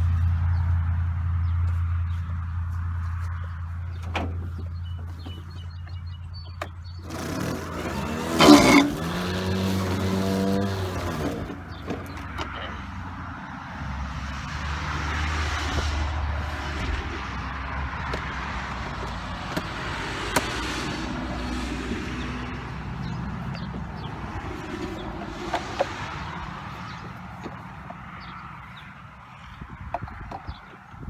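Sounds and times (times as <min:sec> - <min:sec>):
lawn mower cutting grass: 0:06.6 - 0:13.0, 0:14.7 - 0:29.5.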